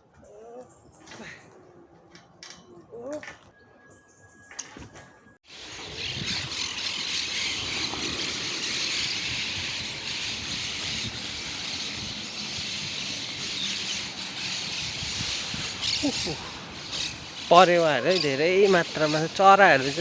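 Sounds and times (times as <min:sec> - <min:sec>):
flock of birds chattering: 0:05.5 - 0:20.0.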